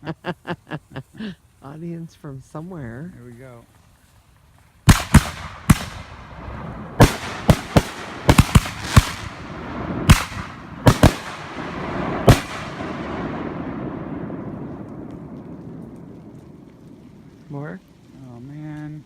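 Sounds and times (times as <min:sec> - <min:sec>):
fireworks hissing fizz: 0:00.0 - 0:19.0
fireworks bangs: 0:03.6 - 0:17.4.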